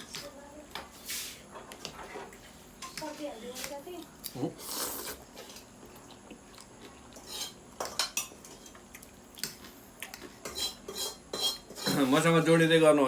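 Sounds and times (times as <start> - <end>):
cutlery clinking on a dish: 7.2 - 8.8, 10.4 - 12.2.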